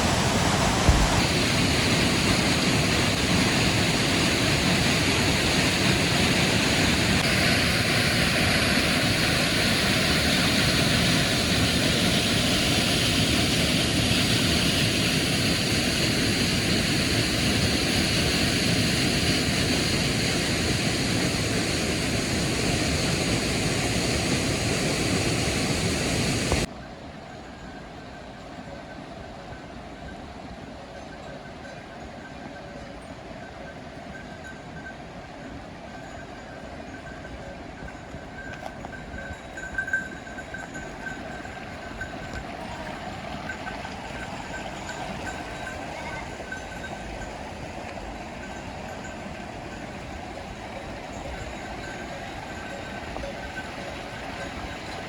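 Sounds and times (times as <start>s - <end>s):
waterfall rushing: 0.0s - 26.7s, 40.1s - 55.0s.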